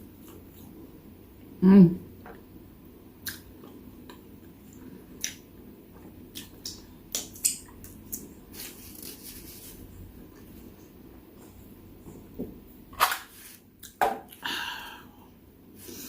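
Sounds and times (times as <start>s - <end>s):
person chewing: 0.0s - 0.8s, 3.2s - 10.8s.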